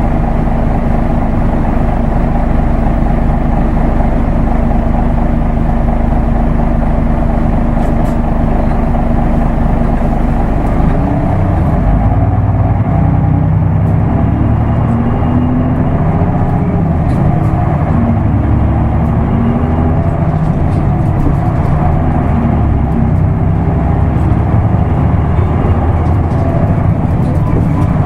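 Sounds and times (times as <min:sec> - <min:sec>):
bus diesel engine rumbling: 0:00.0 - 0:28.0.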